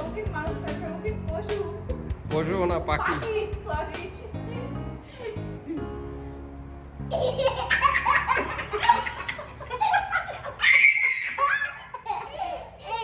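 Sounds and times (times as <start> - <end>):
background music: 0.0 - 9.8
child laughing: 7.1 - 13.0.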